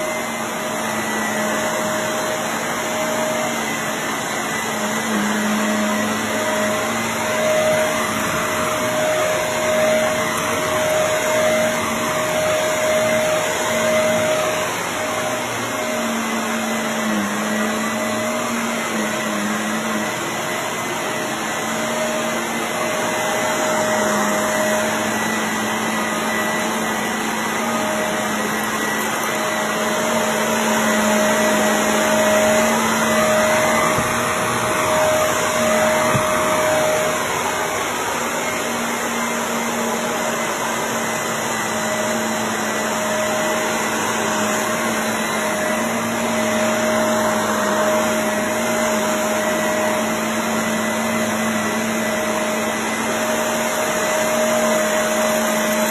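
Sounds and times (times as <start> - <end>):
vacuum cleaner on carpet: 0.0 - 55.9.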